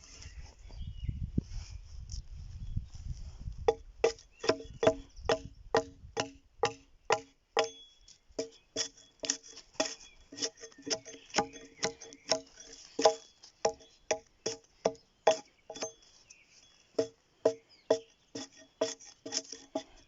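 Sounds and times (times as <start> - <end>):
sharp ringing knocks: 3.7 - 16.0, 17.0 - 19.0.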